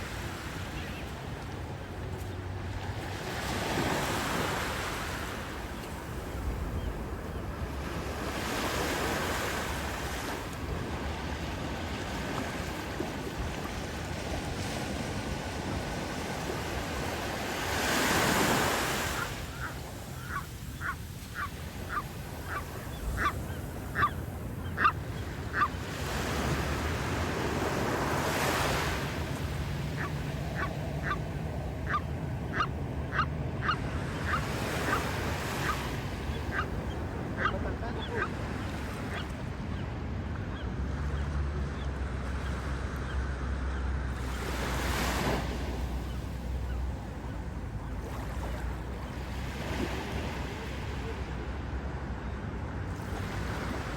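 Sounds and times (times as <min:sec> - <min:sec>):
gull calling: 0:19.0 - 0:25.8, 0:30.0 - 0:38.4.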